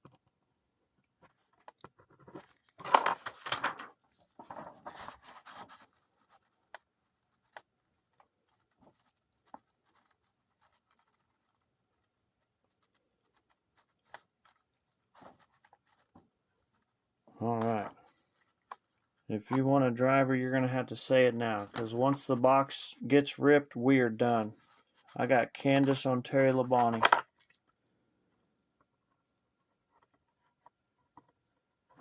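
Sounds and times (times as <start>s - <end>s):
handling rustle: 1.1s - 17.0s, 24.4s - 27.7s.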